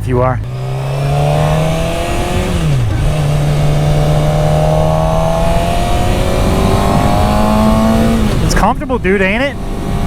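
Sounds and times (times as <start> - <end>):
motorcycle engine accelerating: 0.4 - 10.0.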